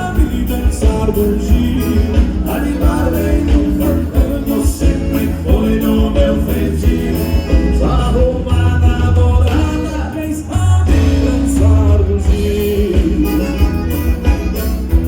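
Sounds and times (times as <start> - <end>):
bass and drums dance beat: 0.0 - 9.8, 11.0 - 15.0
accordion melody: 0.0 - 10.2, 10.9 - 15.0
person singing: 0.0 - 14.9.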